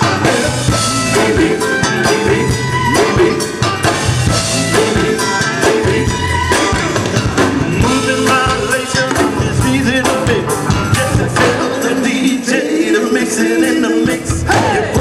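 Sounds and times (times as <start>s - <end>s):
live funk band: 0.0s - 15.0s
person singing: 7.7s - 15.0s.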